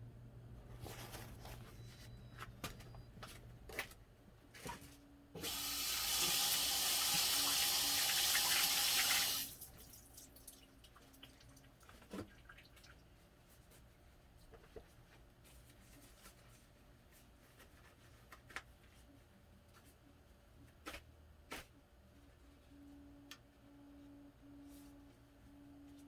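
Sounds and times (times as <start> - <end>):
water running from a tap: 5.4 - 10.6.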